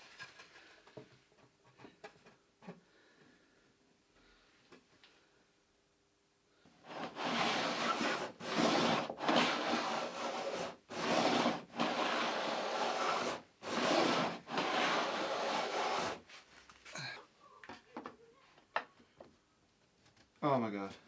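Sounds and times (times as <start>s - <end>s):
hand tool rubbing on wood: 6.9s - 16.6s.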